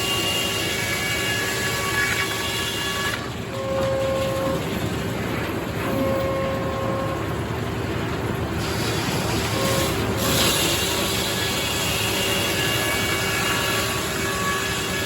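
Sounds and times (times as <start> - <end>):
circular sawmill running: 0.0 - 15.0.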